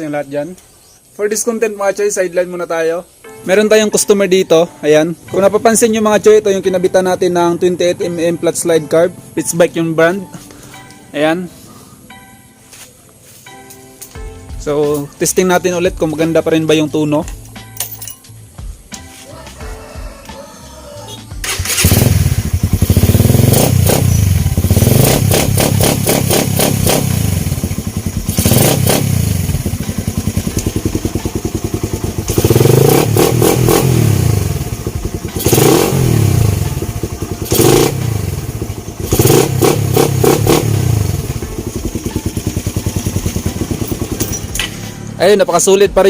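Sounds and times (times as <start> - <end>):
motorcycle engine revving: 21.4 - 45.2.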